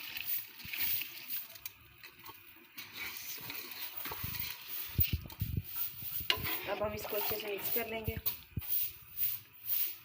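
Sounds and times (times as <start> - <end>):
rice pouring into water: 0.0 - 1.8.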